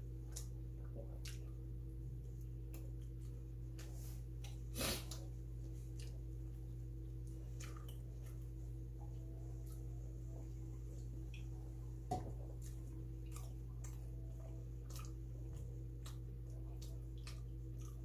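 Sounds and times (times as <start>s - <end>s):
low electrical hum: 0.0s - 18.0s
person eating: 2.6s - 6.6s, 7.2s - 8.6s, 12.4s - 18.0s.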